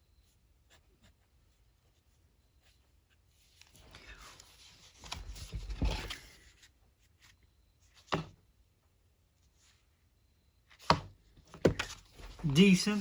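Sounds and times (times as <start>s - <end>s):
pen scratching on paper: 0.2s - 3.7s.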